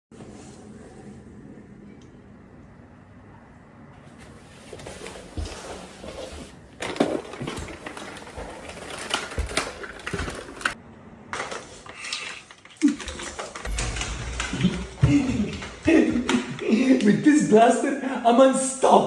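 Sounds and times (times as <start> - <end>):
scattered clicks and knocks: 12.8 - 17.2.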